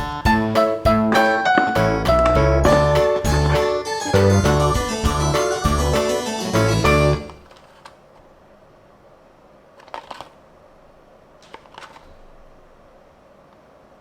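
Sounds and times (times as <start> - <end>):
music: 0.0 - 7.4.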